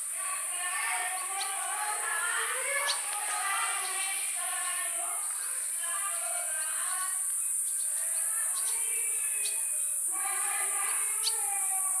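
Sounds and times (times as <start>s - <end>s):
insect chorus droning: 0.0s - 12.0s
bird chirps: 6.5s - 10.0s, 11.1s - 11.5s.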